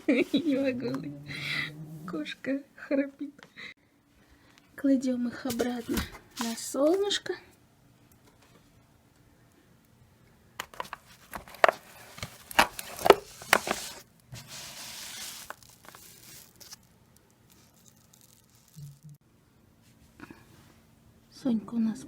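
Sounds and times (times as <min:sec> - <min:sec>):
rustling: 0:10.9 - 0:19.1.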